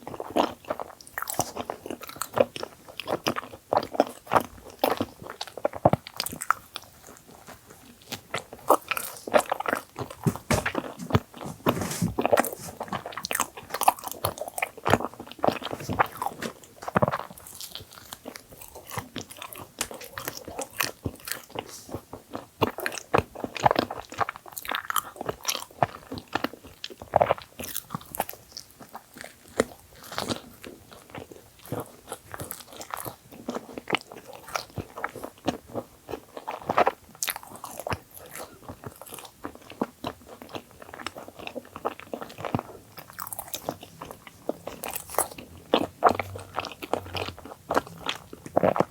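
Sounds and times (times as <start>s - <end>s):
wet chewing: 0.4s - 28.3s, 31.0s - 48.9s
crunchy biting of sandwiches: 7.4s - 21.9s, 31.8s - 48.9s.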